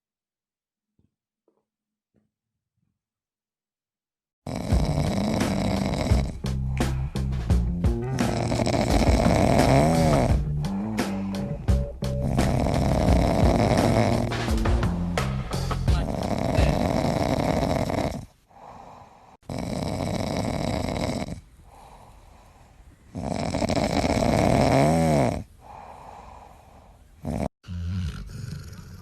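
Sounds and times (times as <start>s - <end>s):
dog snoring loudly: 4.5s - 7.1s, 7.9s - 14.6s, 15.9s - 29.0s
dog breathing: 4.5s - 14.4s, 16.0s - 29.0s.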